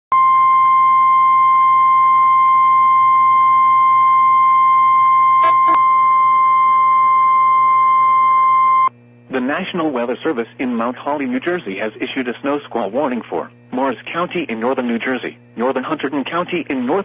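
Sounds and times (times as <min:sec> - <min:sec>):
high alarm beep: 0:00.2 - 0:08.9.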